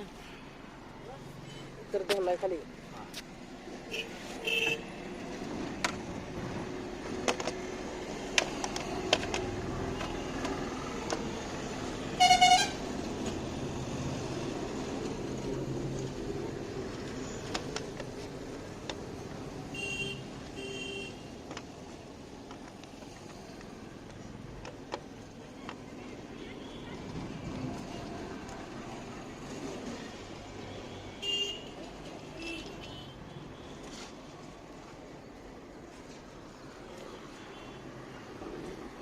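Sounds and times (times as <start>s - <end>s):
traffic hum: 0.0s - 39.0s
vehicle horn toot: 12.2s - 12.8s.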